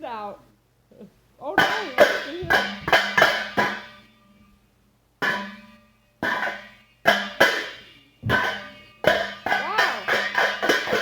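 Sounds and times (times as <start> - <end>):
sharp percussive hits: 1.6 - 4.1, 5.2 - 11.0.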